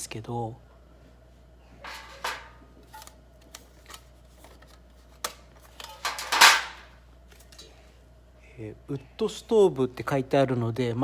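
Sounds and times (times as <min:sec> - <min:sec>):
metal panels scraping rattle: 0:01.9 - 0:02.6, 0:05.9 - 0:06.9.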